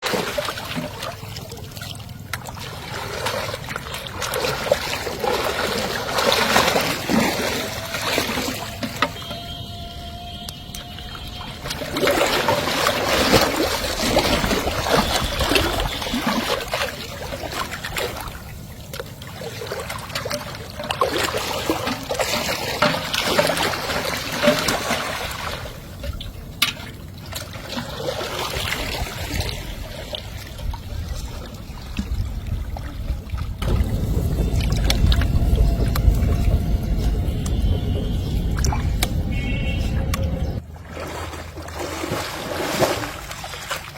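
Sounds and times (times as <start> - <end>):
river water splashing: 0.0 - 43.9
low rumble: 30.7 - 40.7.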